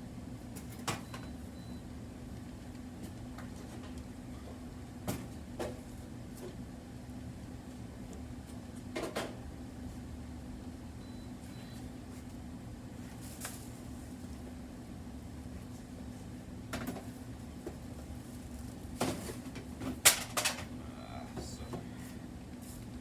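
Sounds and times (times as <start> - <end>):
steady low hum: 20.7 - 23.0.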